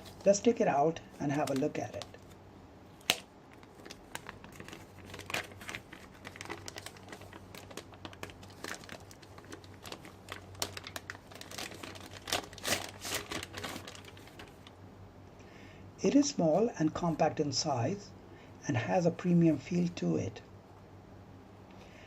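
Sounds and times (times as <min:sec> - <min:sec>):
plastic bag crinkling: 0:00.0 - 0:02.4, 0:03.0 - 0:14.7.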